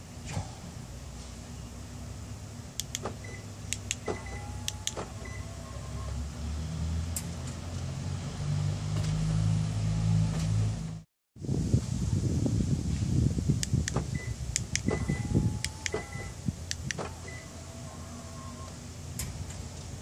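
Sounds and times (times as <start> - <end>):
low motor hum: 0.0 - 20.0
sharp actuator clicks: 2.8 - 5.0, 13.6 - 15.0, 15.6 - 16.1, 16.7 - 17.1.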